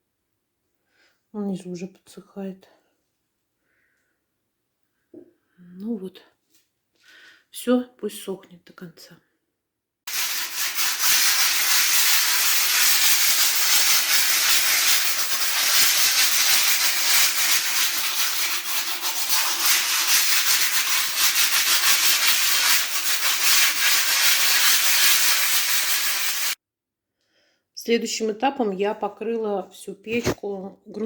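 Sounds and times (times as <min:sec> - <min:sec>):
scraping rough mortar: 0:10.1 - 0:26.6.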